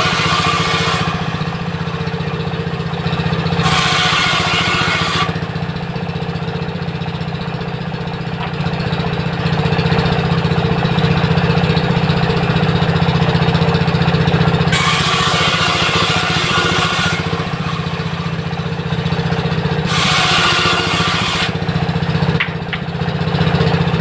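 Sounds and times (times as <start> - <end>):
saw blade cutting wood: 0.0 - 6.1, 6.8 - 9.0, 14.6 - 22.9
diesel engine chugging: 0.0 - 24.0.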